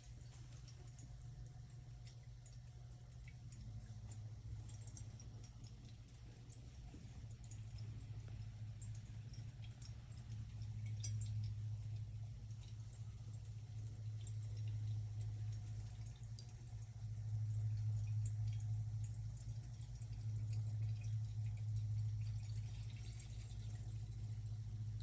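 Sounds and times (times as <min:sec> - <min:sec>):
pump humming: 0:00.0 - 0:25.0
water trickling and dripping: 0:00.0 - 0:25.0.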